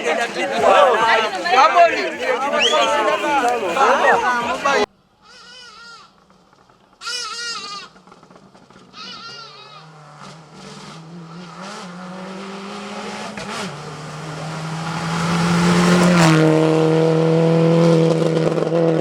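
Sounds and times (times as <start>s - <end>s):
goat bleating: 5.2s - 6.1s, 7.0s - 8.0s, 9.0s - 9.9s
rally car engine passing: 8.4s - 19.0s.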